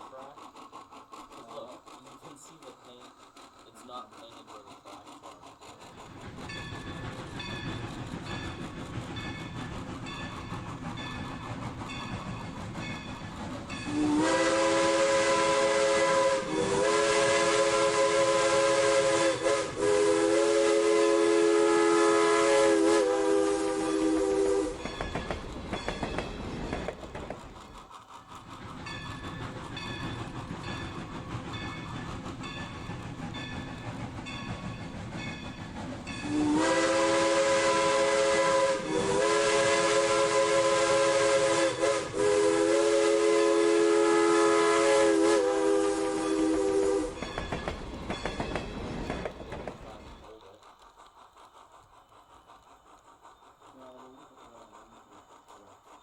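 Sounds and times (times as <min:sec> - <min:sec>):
train running with faint clicks: 0:00.0 - 0:56.0
steam locomotive chime whistle: 0:12.0 - 0:26.3, 0:29.9 - 0:49.8.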